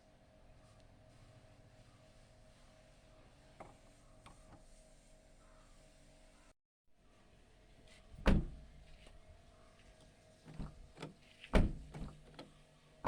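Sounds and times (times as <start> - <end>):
car door thumps: 8.2 - 8.9, 11.6 - 12.2.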